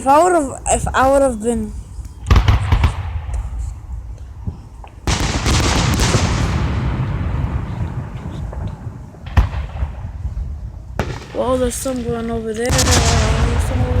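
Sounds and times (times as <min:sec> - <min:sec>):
low rumble: 0:00.6 - 0:14.0
fireworks exploding: 0:02.2 - 0:03.8, 0:04.8 - 0:14.0.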